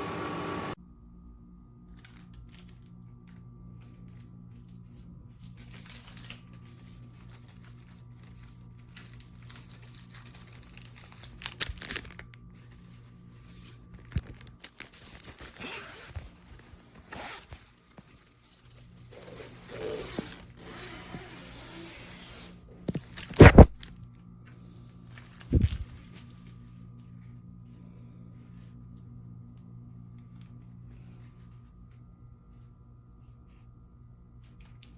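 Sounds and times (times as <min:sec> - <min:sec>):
faint low hum: 0:00.0 - 0:34.9
rustling crinkling handling noises: 0:01.9 - 0:27.4.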